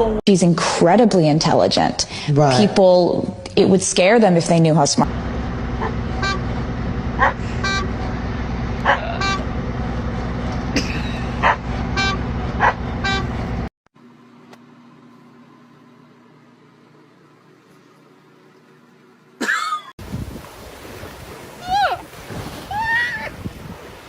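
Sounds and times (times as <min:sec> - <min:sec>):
vehicle engine drone: 0:05.0 - 0:13.7
dog barking: 0:07.2 - 0:07.4, 0:08.8 - 0:09.0, 0:11.4 - 0:11.7, 0:12.6 - 0:12.8.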